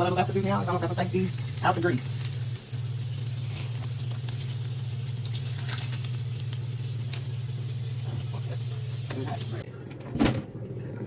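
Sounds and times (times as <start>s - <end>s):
food deep-frying in oil: 0.0s - 9.6s
low hum: 0.0s - 9.6s.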